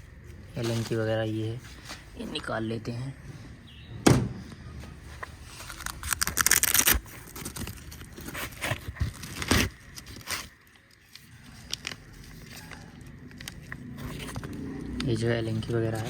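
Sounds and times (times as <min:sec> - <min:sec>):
plastic pouch crinkling and tearing: 0:05.5 - 0:16.0.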